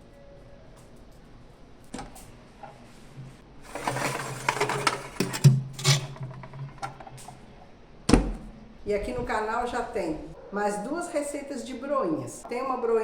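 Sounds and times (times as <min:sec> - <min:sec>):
metal tray scraping and clattering: 0:03.6 - 0:07.3.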